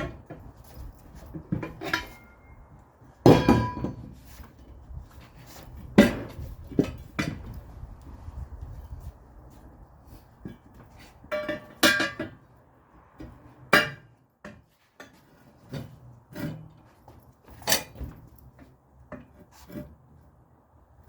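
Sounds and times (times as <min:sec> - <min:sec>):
metal clanking: 0:01.3 - 0:02.6.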